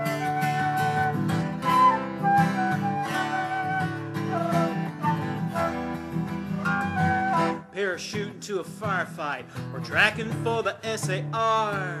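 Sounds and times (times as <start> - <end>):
woodwind-like melody: 0.0 - 7.8
acoustic guitar: 0.0 - 12.0.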